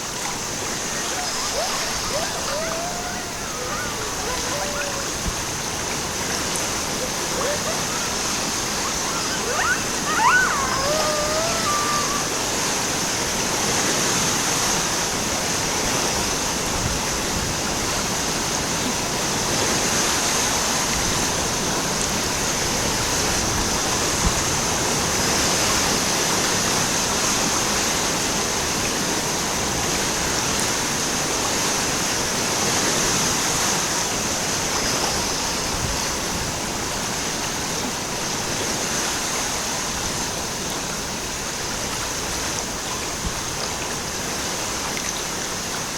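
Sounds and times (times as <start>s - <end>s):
high-pitched hiss: 0.0s - 13.5s
rushing water: 0.0s - 45.9s.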